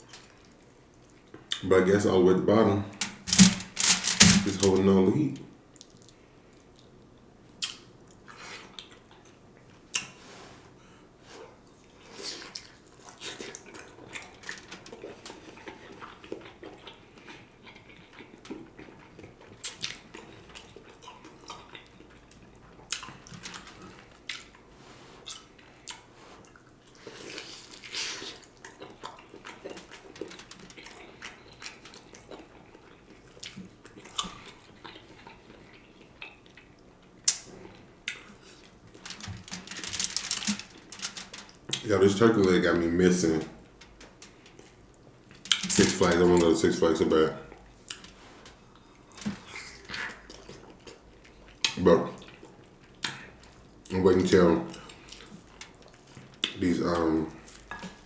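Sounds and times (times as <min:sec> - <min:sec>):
sharp clicks and smacks: 0:03.0 - 0:04.9
chewing and mouth sounds: 0:11.4 - 0:41.9, 0:47.4 - 0:56.7.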